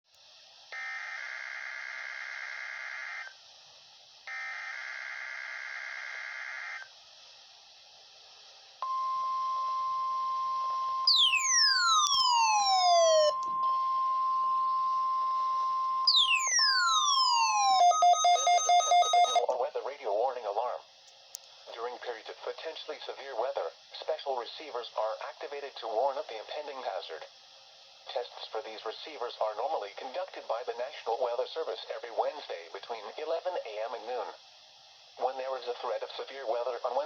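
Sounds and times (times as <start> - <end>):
steady weather alarm tone: 8.8 - 19.5
screechy digital data bursts: 15.6 - 19.4
radio hiss: 19.3 - 37.0.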